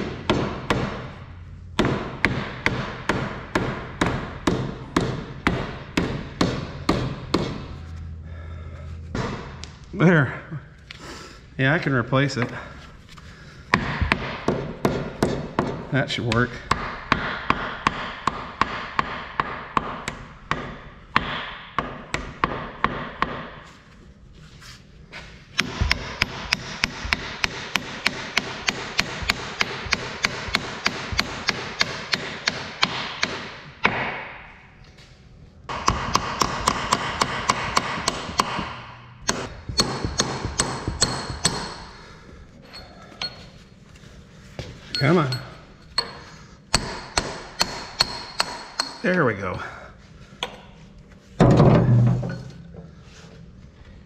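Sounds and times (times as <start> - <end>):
hammer striking steel pin: 1.8 - 7.8, 25.6 - 34.3, 35.7 - 42.0, 44.9 - 49.1
metallic ringing: 42.6 - 43.7, 44.8 - 46.3, 51.8 - 52.8.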